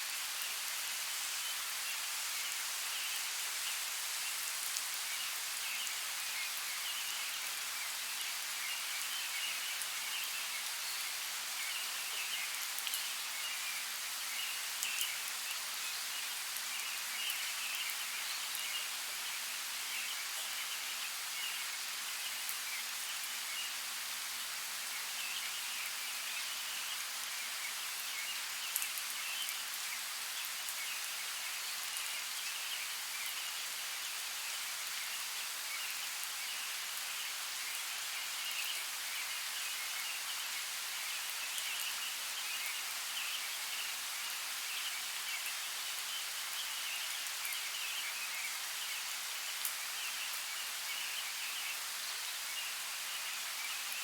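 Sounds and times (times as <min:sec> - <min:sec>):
raindrops ticking on leaves: 0:00.0 - 0:21.1, 0:26.2 - 0:54.0
light rain hissing: 0:00.0 - 0:54.0.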